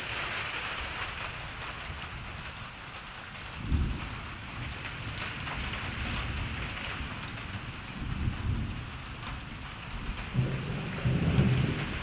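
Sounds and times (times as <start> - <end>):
rain falling: 0.0 - 12.0
distant thunder rumble: 10.3 - 12.0.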